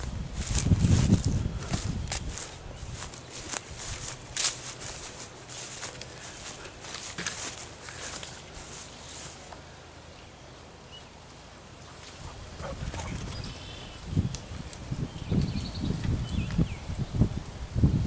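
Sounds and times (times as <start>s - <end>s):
footsteps in dry leaves: 0.0s - 9.5s.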